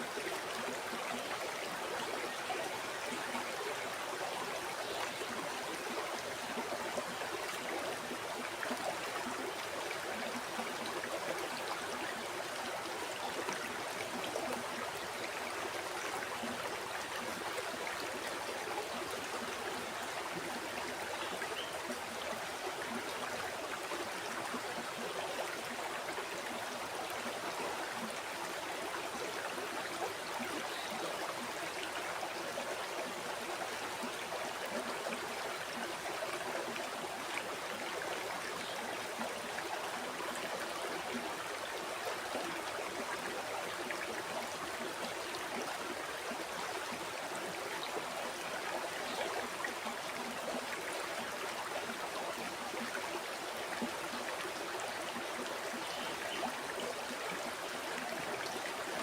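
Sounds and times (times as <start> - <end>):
river water flowing over stones: 0.0 - 59.0.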